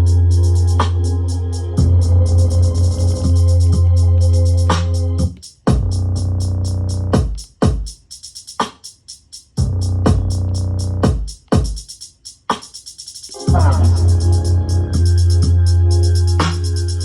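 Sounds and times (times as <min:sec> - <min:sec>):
organ-like synth chords: 0:00.0 - 0:05.4, 0:13.4 - 0:17.0
deep bass: 0:00.0 - 0:07.2, 0:09.6 - 0:11.2, 0:13.4 - 0:17.0
drum machine hi-hat ticks: 0:00.0 - 0:17.0
kick drum hits: 0:07.2 - 0:08.0, 0:11.0 - 0:11.8.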